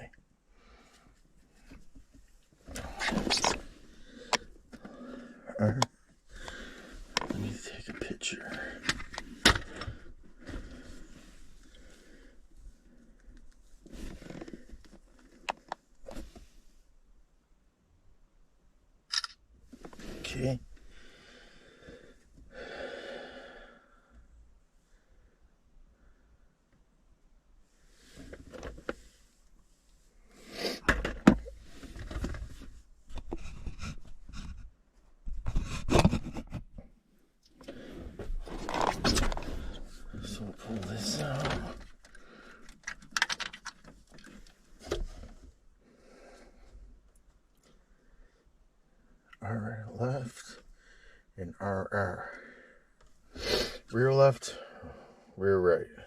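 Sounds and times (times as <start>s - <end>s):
faint rustling and handling: 0.6s - 5.4s, 6.0s - 17.0s, 31.4s - 48.4s.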